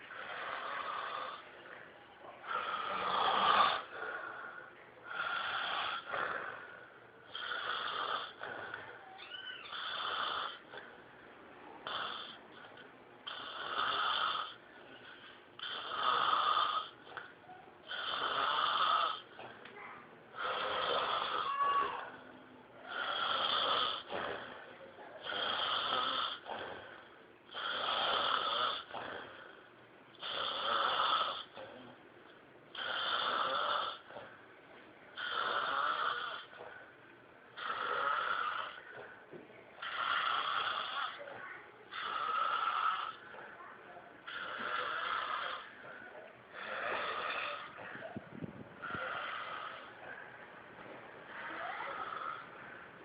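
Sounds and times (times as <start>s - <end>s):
quiet breaths: 0.0s - 53.0s
person snoring: 41.9s - 43.4s, 46.5s - 47.8s.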